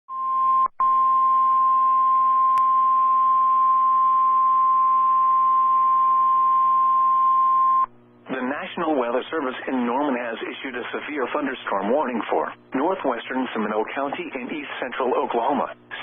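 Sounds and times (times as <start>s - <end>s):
faint low hum: 0.3s - 16.0s.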